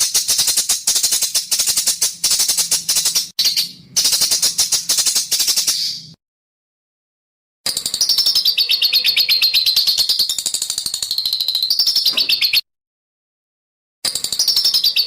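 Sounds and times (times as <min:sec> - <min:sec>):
songbird rapid chattering song: 0:00.0 - 0:06.2, 0:07.7 - 0:12.6, 0:14.1 - 0:15.0.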